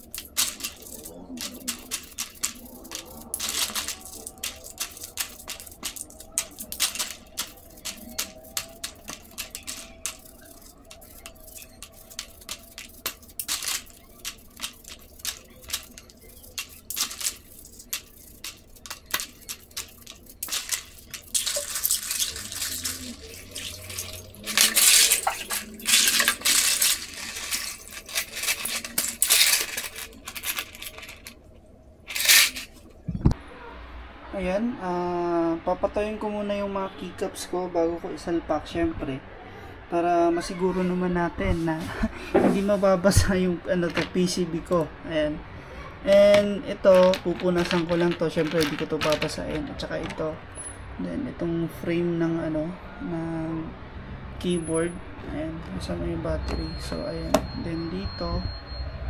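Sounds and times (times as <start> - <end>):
washing water noise: 0.0 - 29.9
brush scrubbing: 0.0 - 31.3
plastic keycaps clattering in water: 0.0 - 31.4, 32.1 - 32.8, 43.8 - 44.3, 46.1 - 50.2.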